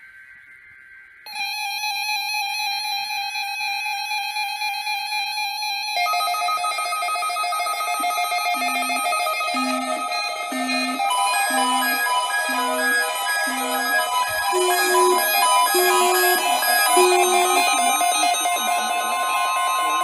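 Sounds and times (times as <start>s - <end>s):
steady high-pitched alarm: 0.0s - 20.0s
higher alarm tone: 6.0s - 20.0s
low pulsing beep: 7.6s - 20.0s.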